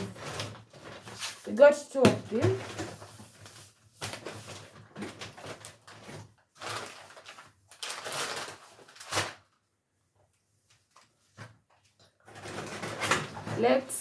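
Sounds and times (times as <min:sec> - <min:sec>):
packaging rustling: 0:02.3 - 0:09.5.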